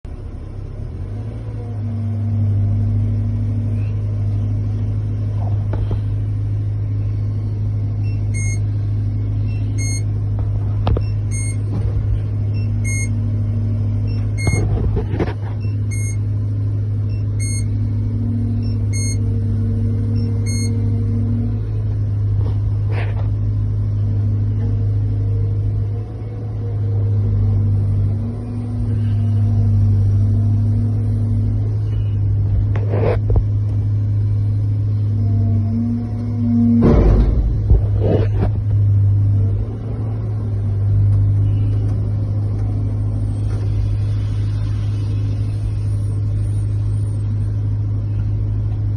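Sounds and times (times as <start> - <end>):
excavator diesel engine running: 0.0 - 48.9
electronic beep: 7.4 - 8.8, 9.4 - 10.2, 10.9 - 11.7, 12.4 - 13.3, 14.0 - 14.7, 15.6 - 16.3, 17.0 - 17.8, 18.6 - 19.4, 20.1 - 21.0.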